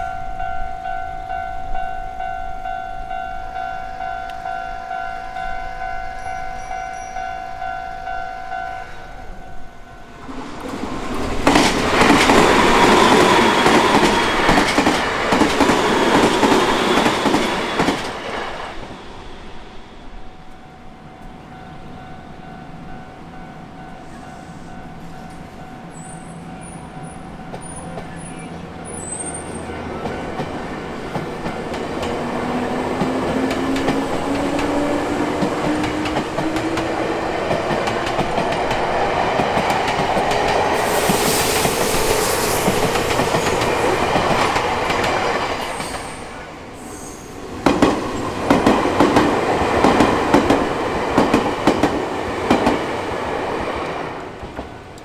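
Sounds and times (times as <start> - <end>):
train wheels clattering over rail joints: 10.2 - 18.4, 30.0 - 46.2, 47.4 - 55.0.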